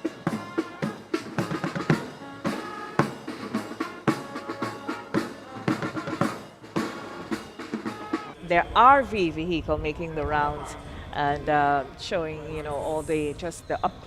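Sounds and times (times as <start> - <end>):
band holding notes: 0.0 - 10.6.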